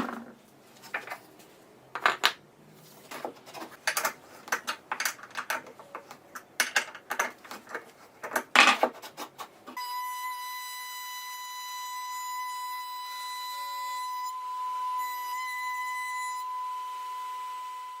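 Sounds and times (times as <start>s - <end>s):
steady high tone: 9.8s - 18.0s.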